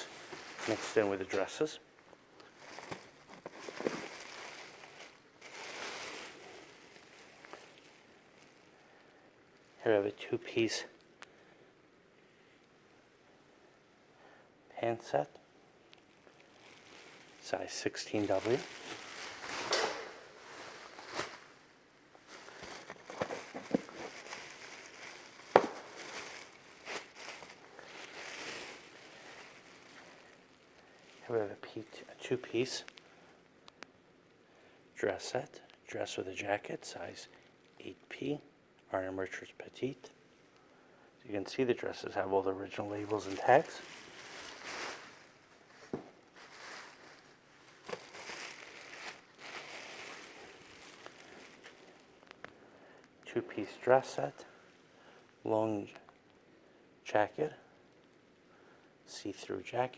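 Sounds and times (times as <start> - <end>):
fabric rustling and crinkling: 0.0 - 9.9, 15.9 - 31.8, 42.7 - 52.5.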